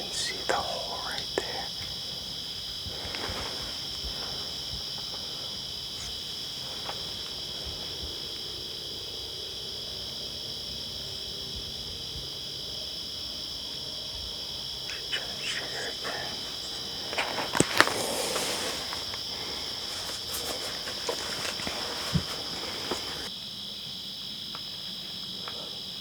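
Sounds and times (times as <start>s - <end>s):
crickets trilling: 0.0s - 26.0s
sharp clicks and rustles: 16.6s - 23.3s.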